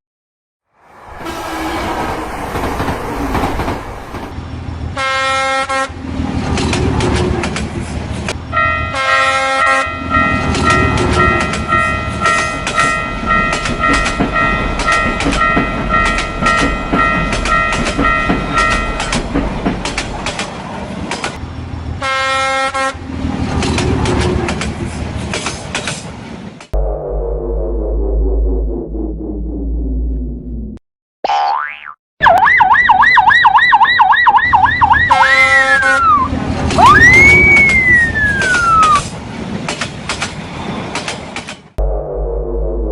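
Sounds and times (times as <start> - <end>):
train horn blowing: 1.0 - 2.6, 4.9 - 6.0, 8.5 - 19.1, 22.0 - 23.0, 35.1 - 36.2
train wheels clacking on rails: 1.2 - 4.4, 10.2 - 21.4, 23.3 - 26.7, 38.4 - 41.8
crossing alarm bell ringing: 8.6 - 19.3.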